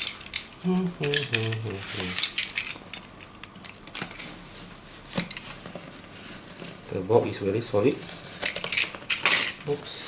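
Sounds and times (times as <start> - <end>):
person speaking: 0.6 - 2.4, 9.5 - 10.0.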